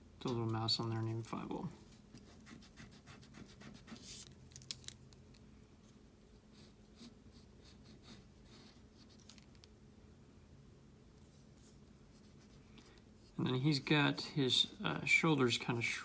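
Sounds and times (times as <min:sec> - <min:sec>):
pencil scratching on paper: 0:02.2 - 0:04.2, 0:06.5 - 0:09.2.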